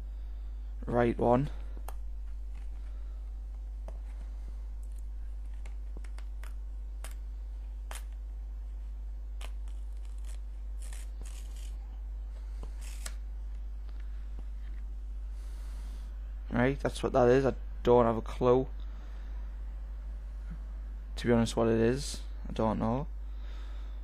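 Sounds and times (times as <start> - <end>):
steady low hum: 0.0 - 24.0
paper crackles and clicks: 9.4 - 11.8
paper rustling peels: 9.4 - 11.8, 12.4 - 13.2.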